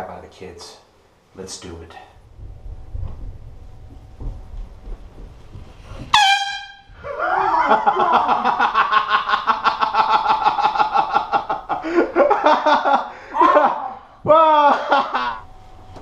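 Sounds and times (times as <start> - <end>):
air horn blasts: 6.1 - 7.0.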